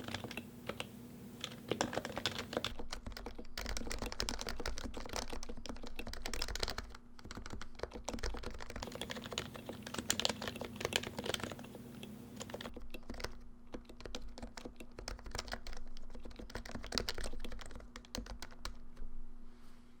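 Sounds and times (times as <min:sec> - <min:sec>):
keyboard typing: 0:00.0 - 0:18.8.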